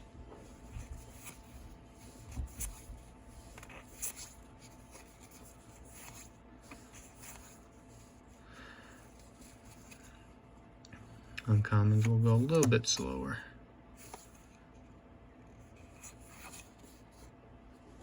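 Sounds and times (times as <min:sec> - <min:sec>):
trading cards sliding and tapping: 0:00.4 - 0:08.2, 0:11.9 - 0:13.1, 0:14.0 - 0:14.6.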